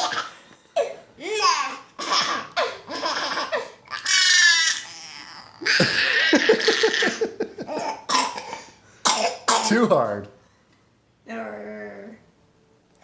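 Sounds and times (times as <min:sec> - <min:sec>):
baby laughing: 0:01.3 - 0:04.6, 0:05.6 - 0:08.1
baby squealing: 0:02.9 - 0:07.2.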